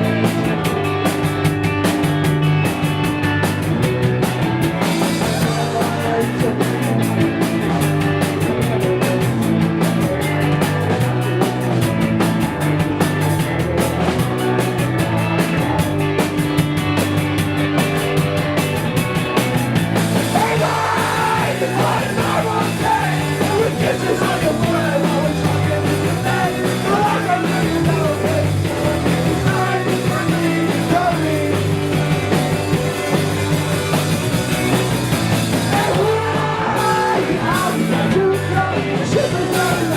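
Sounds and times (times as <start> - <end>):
live rock band playing: 0.0 - 39.9
person singing: 5.2 - 7.8, 20.3 - 31.8, 35.7 - 39.9.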